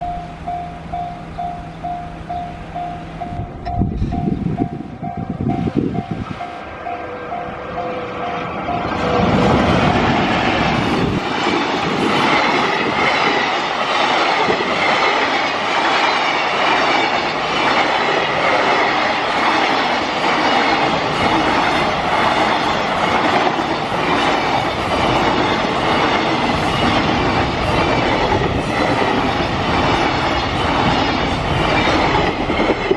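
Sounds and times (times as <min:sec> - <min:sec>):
freight train rumbling past: 0:00.0 - 0:32.9
wheels clacking over rail joints: 0:07.1 - 0:32.9.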